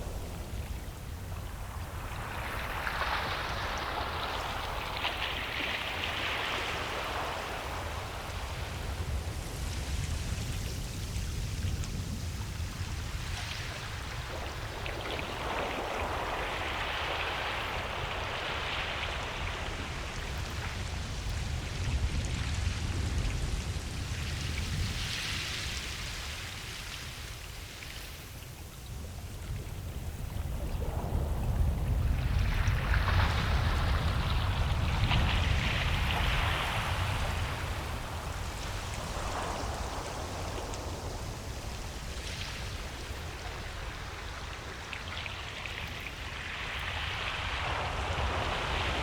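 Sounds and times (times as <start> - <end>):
low rumble of surf: 0.0 - 49.0
waves breaking on beach: 0.0 - 49.0.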